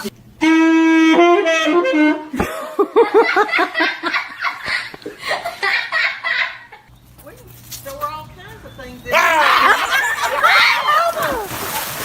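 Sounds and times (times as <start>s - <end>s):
person laughing hard: 2.3s - 6.7s, 9.5s - 11.5s.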